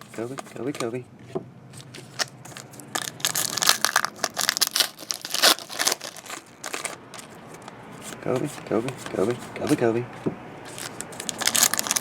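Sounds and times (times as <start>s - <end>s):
card pack wrapper tearing: 1.9s - 7.7s, 10.7s - 12.0s.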